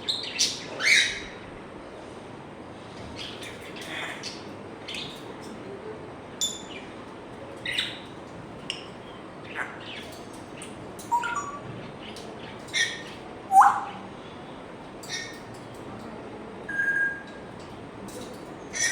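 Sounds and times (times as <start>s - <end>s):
parrot chirps clicks and whistles: 11.0s - 11.6s, 16.7s - 17.5s.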